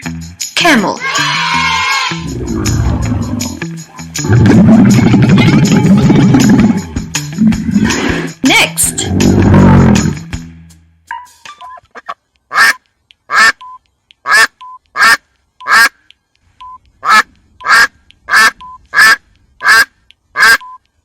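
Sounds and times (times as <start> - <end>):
duck quacking: 11.9 - 13.6, 14.2 - 16.0, 17.0 - 20.6.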